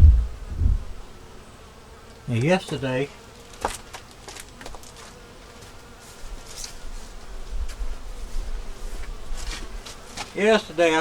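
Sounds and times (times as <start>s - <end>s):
low rumble: 0.0s - 1.0s
honey bees buzzing: 0.0s - 11.0s.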